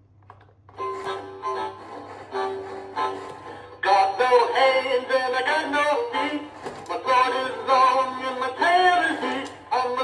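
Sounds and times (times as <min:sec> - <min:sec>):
toy backing music: 0:00.8 - 0:10.0
toy male voice singing: 0:03.8 - 0:10.0.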